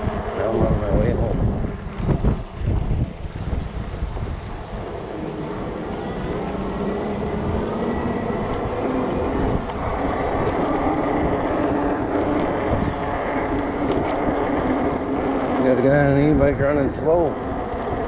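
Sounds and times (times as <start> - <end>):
electric motor whine: 0.0 - 18.0
wind rushing over microphone: 0.0 - 18.0
tyres rolling on pavement: 4.6 - 18.0.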